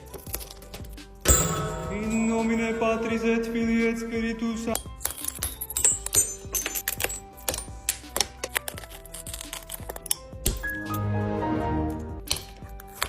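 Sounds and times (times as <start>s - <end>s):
background music: 0.0s - 13.0s
glass chipping clicks and tinkles: 4.7s - 10.8s.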